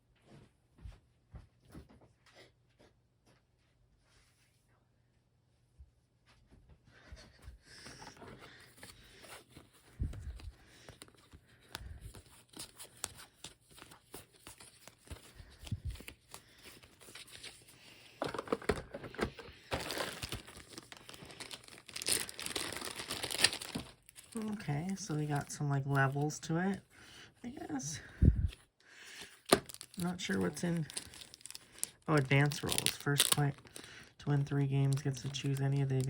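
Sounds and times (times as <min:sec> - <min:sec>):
packaging crinkling and rustling: 0:08.0 - 0:26.8, 0:28.5 - 0:36.0.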